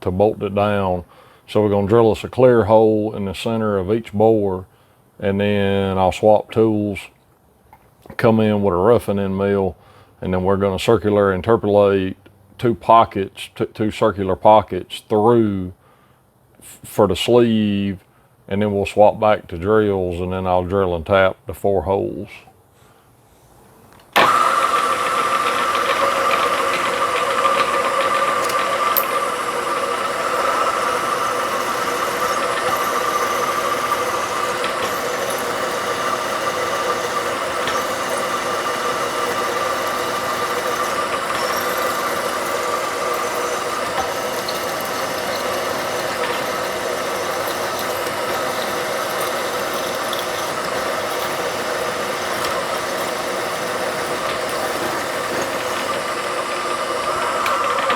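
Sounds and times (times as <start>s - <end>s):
milling machine cutting metal: 24.2s - 57.9s.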